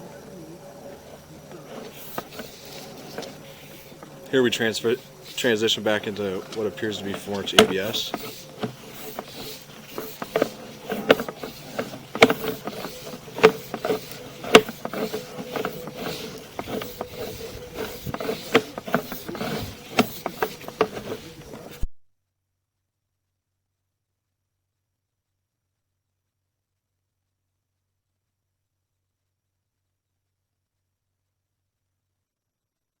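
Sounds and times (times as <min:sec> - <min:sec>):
cable clicks and knocks: 0:01.5 - 0:21.9.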